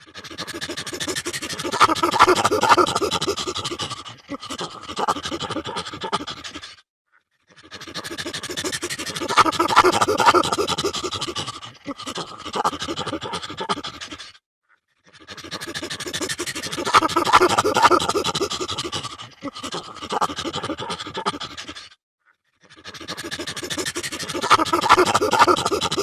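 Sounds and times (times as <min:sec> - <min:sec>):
chimpanzee calling: 0:00.5 - 0:04.0, 0:07.9 - 0:13.3, 0:15.5 - 0:21.3, 0:23.0 - 0:26.0.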